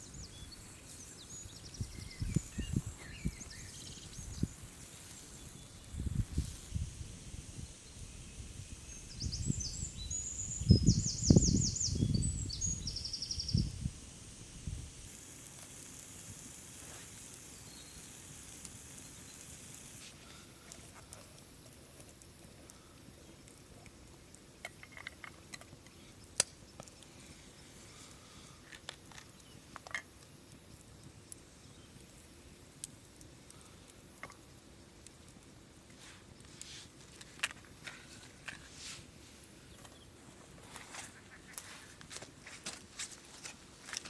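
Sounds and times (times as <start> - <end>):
faint outdoor hiss: 0.0 - 44.0
wind buffeting microphone: 1.6 - 4.8, 5.8 - 14.9.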